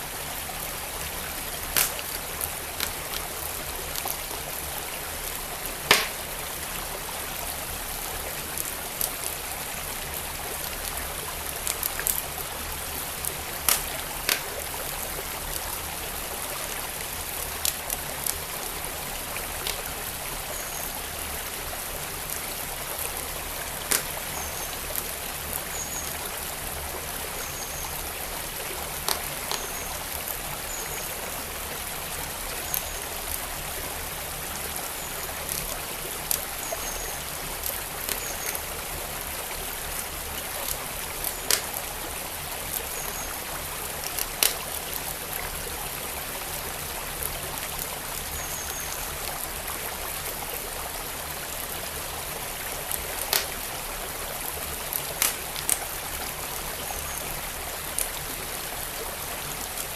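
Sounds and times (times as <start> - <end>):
stream flowing: 0.0 - 59.9
wood fire crackling: 1.6 - 4.3, 5.2 - 6.4, 10.9 - 14.9, 19.6 - 19.9, 23.0 - 25.2, 29.0 - 29.6, 40.2 - 42.0, 44.1 - 45.0, 52.8 - 53.7, 54.4 - 56.2.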